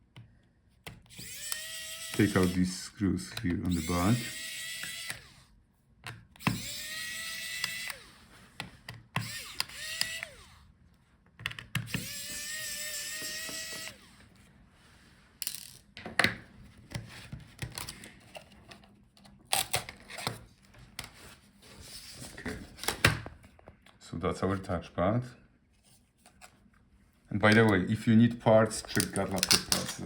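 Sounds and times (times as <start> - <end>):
electric screwdriver whining: 1.0 - 5.5, 6.4 - 8.3, 9.2 - 10.7, 11.8 - 14.3
small parts clicking and knocking: 8.9 - 10.5, 15.4 - 16.3.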